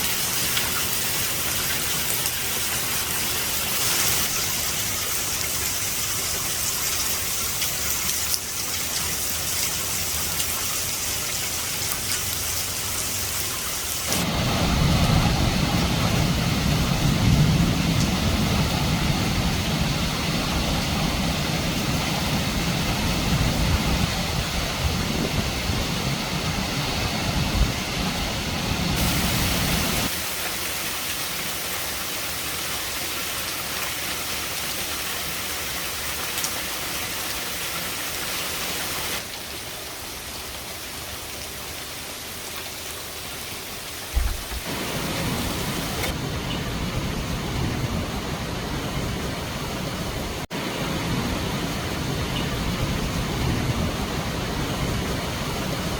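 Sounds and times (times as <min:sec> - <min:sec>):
steady rain falling: 0:00.0 - 0:55.9
low rumble: 0:14.2 - 0:30.1
short thumps: 0:44.2 - 0:44.6.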